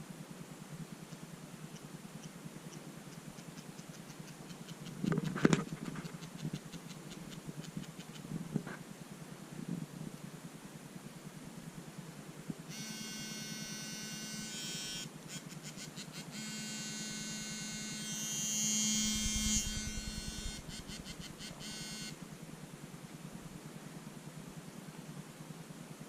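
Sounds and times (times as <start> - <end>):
phone vibration motor buzzing: 12.7 - 22.2.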